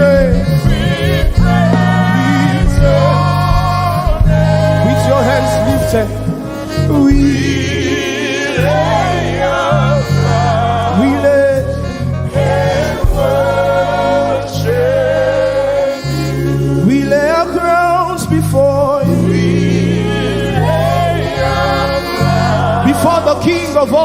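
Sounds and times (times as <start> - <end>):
band with stepping bass line: 0.0 - 24.0
singers holding wavering notes: 0.0 - 24.0
drum hits: 0.1 - 4.8.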